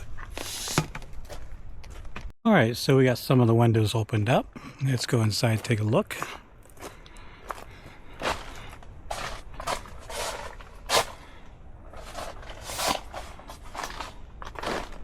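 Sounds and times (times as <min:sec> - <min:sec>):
footsteps: 0:05.5 - 0:11.2, 0:11.9 - 0:15.0.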